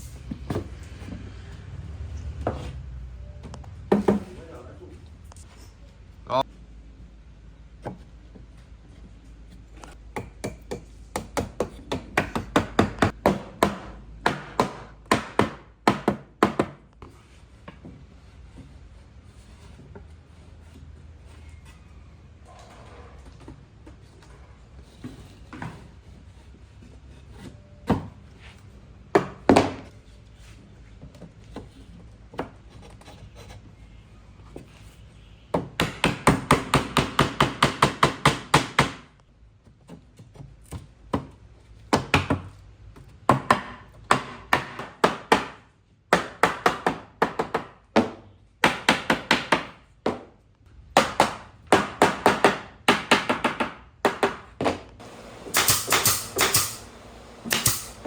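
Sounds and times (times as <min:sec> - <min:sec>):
hammering on wood: 0:10.1 - 0:16.9, 0:35.6 - 0:39.1, 0:43.3 - 0:50.3, 0:51.0 - 0:58.0.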